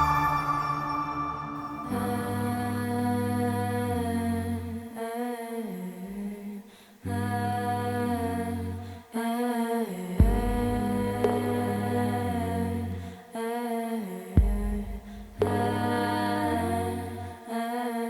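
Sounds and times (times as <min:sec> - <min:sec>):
sustained tones: 0:00.0 - 0:03.5
wordless hummed vocal: 0:10.1 - 0:13.1.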